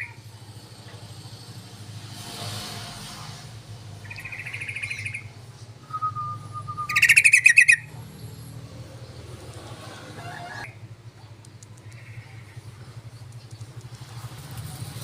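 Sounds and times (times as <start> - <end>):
bird whistle: 4.0 - 7.9.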